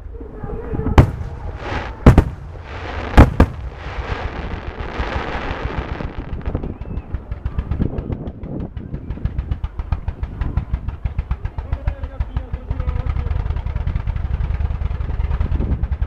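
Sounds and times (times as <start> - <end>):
rapid firework bangs: 0.6 - 7.9.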